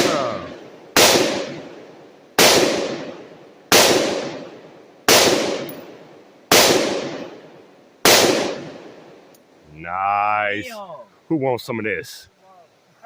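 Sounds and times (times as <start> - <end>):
man's voice: 0.0 - 0.6, 9.7 - 12.3
gunshots: 0.0 - 7.4, 8.0 - 9.0.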